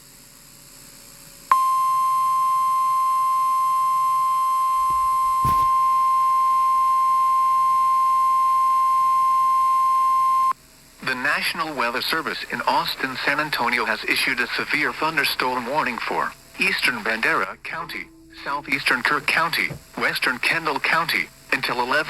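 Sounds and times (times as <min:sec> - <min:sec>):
steady alarm tone: 0:04.1 - 0:08.6
faint radio hiss: 0:10.6 - 0:22.0.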